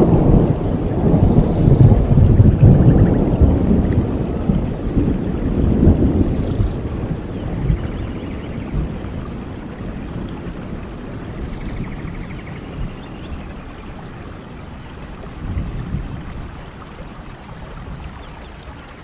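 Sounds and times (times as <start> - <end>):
low rumbling: 0.0 - 10.3
steady rain: 0.0 - 19.0.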